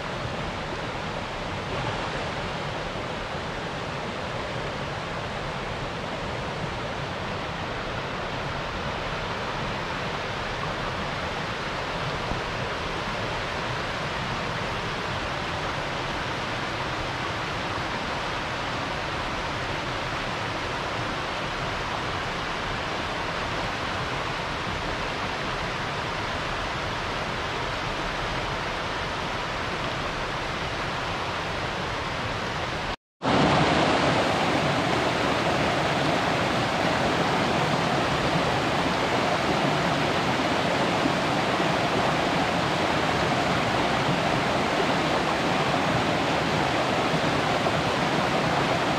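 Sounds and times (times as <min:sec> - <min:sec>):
waterfall rushing: 0:00.0 - 0:18.2, 0:29.2 - 0:48.9.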